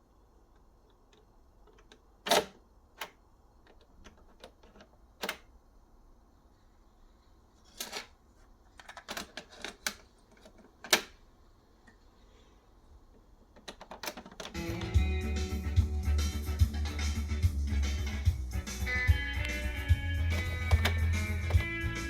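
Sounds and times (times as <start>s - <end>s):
cassette deck clicks: 3.8s - 5.5s, 8.8s - 11.2s, 13.5s - 15.1s, 19.3s - 22.0s
cassette deck clunks: 13.6s - 15.1s, 19.3s - 22.0s.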